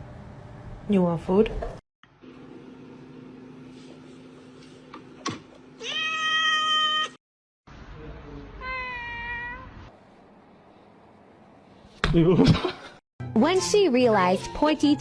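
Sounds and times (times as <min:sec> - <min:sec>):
cat meowing: 0:05.8 - 0:07.2, 0:08.6 - 0:09.9.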